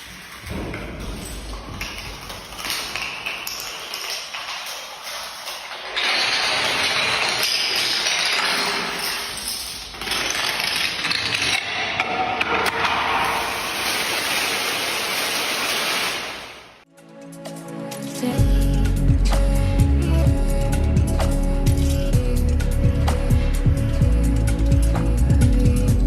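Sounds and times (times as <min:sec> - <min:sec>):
music: 0:16.9 - 0:26.0.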